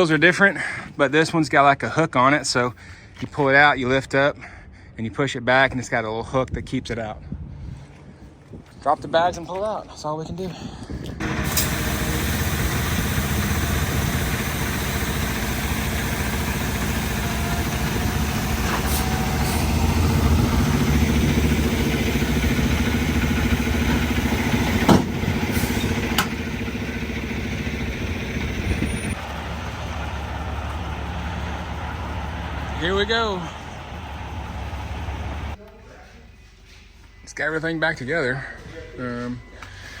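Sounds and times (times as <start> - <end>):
diesel engine running: 11.2 - 35.6.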